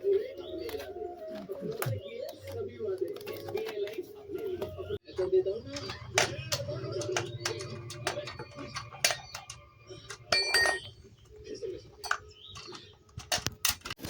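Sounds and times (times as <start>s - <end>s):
metallic tool clinks and knocks: 5.8s - 11.0s.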